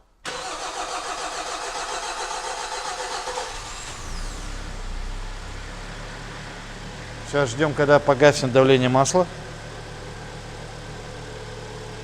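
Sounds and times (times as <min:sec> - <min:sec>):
starter cranking engine: 0:00.3 - 0:04.5
engine idling: 0:00.3 - 0:12.0.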